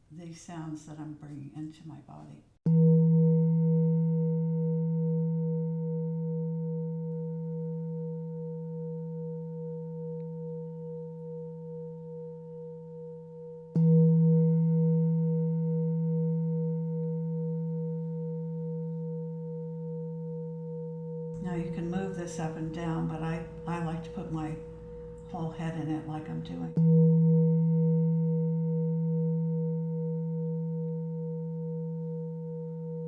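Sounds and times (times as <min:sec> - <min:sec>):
singing bowl ringing: 0:02.7 - 0:33.0.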